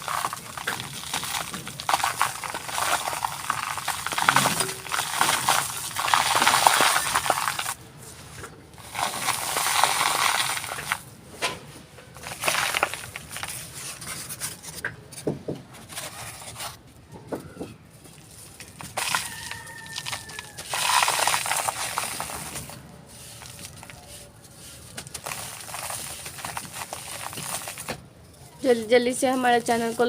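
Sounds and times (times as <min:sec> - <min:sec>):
dry pieces crunching by hand: 0:00.0 - 0:07.8, 0:08.8 - 0:11.0, 0:12.1 - 0:14.7, 0:18.1 - 0:28.6.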